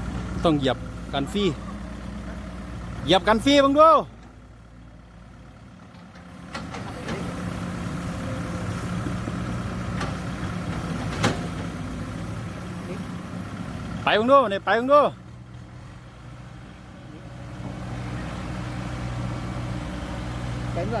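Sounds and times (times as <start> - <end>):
heavy machinery diesel engine: 0.0 - 21.0.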